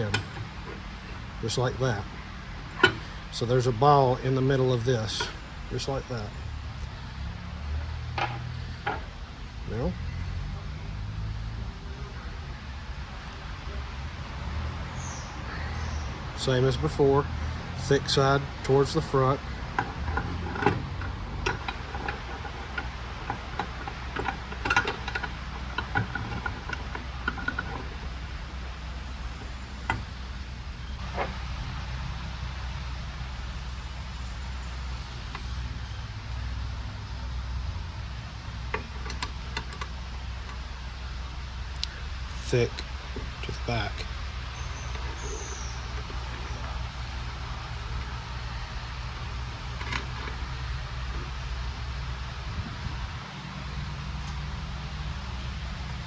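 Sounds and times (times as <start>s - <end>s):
steel parts clicking and clinking: 0.0s - 7.1s, 8.0s - 10.7s, 15.4s - 31.7s, 33.3s - 36.0s, 38.4s - 52.3s
steady low hum: 0.0s - 56.0s.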